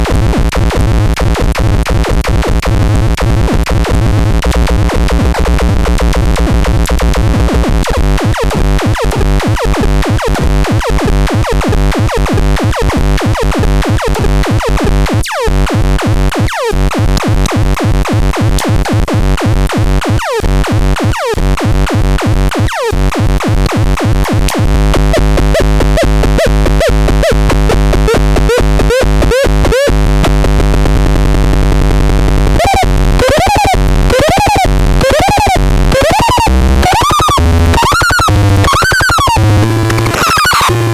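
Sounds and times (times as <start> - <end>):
synthesizer buzzing low drone: 24.7 - 40.9.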